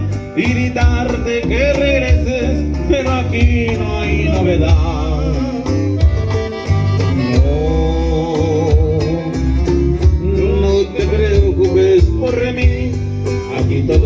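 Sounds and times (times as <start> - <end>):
bass line: 0.0 - 14.0
drum beat: 0.5 - 5.4, 6.0 - 9.2, 11.4 - 13.2.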